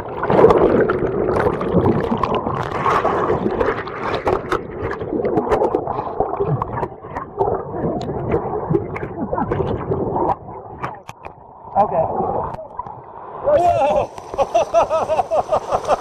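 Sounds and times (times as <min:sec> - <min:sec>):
person wading through water: 0:13.6 - 0:16.0.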